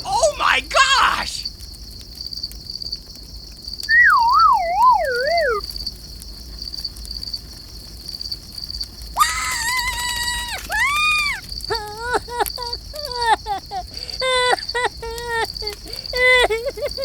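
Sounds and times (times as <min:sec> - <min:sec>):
crickets chirping: 0:00.0 - 0:17.0
long high tone: 0:04.0 - 0:05.6.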